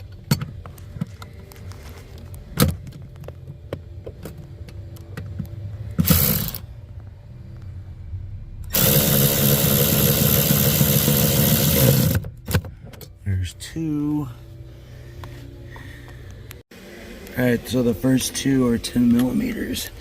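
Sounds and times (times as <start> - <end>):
power tool driving a bolt: 6.0 - 6.6, 8.7 - 12.3.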